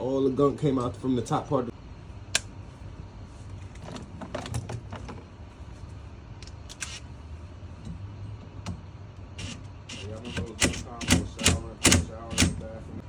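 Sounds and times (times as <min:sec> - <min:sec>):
low steady hum: 0:00.0 - 0:13.0
hand tools clicking and tapping metal: 0:09.4 - 0:12.7.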